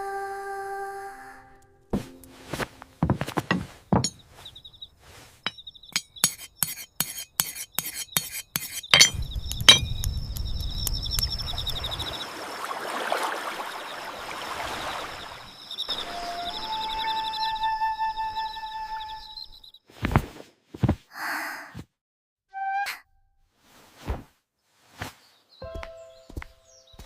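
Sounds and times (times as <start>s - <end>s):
dishes and glasses clinking: 2.0s - 4.2s, 8.9s - 9.9s
faint high chirping: 3.6s - 12.4s, 14.7s - 19.8s, 25.6s - 27.0s
sharp clicks: 9.1s - 11.3s
steady rain with low rumble: 9.2s - 16.6s.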